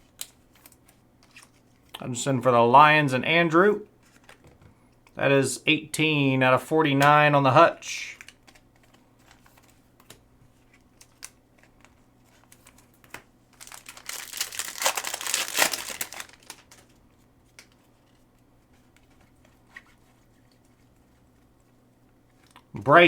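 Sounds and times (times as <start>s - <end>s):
wrapper tearing and crinkling: 13.5s - 17.0s.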